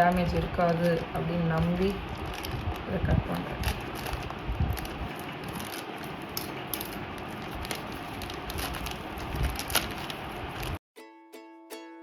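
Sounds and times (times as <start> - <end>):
plastic packaging crinkling: 0.1 - 10.8
plucked ukulele music: 11.0 - 12.0.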